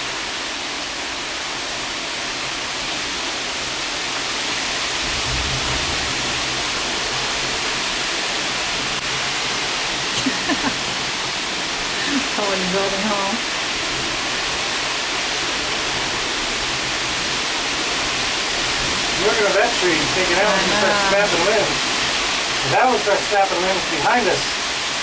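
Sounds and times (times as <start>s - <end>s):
heavy rain pouring: 0.0s - 25.0s
low thunder rumble: 5.0s - 7.1s.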